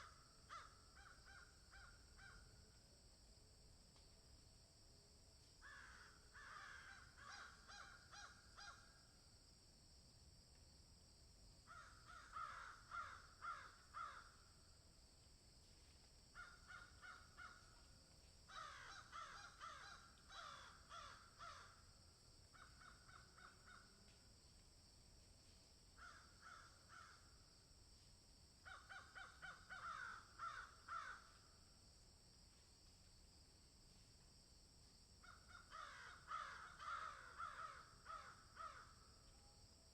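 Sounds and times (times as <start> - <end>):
crows cawing: 0.0 - 2.4, 5.6 - 8.9, 11.7 - 14.4, 16.4 - 17.8, 18.5 - 21.8, 22.5 - 23.9, 26.0 - 27.3, 28.6 - 31.4, 35.2 - 39.0.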